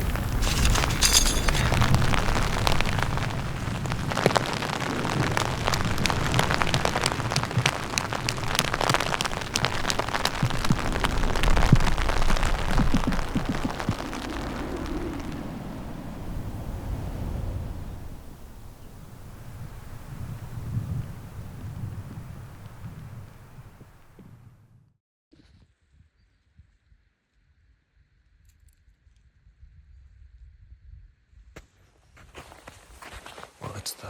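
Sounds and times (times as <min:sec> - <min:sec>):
raindrops ticking on microphone: 0:00.0 - 0:24.1
wind buffeting microphone: 0:00.0 - 0:24.3.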